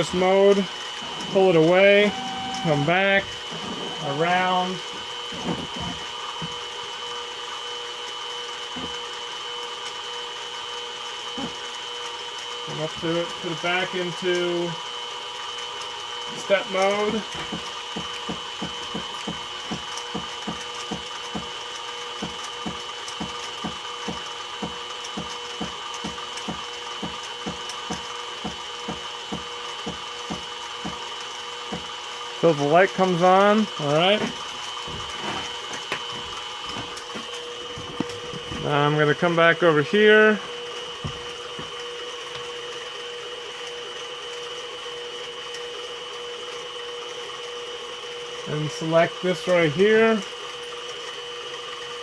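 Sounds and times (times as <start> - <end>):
steady high whine: 0.0 - 8.0, 16.2 - 21.5, 22.2 - 43.2
milling machine humming: 0.0 - 52.0.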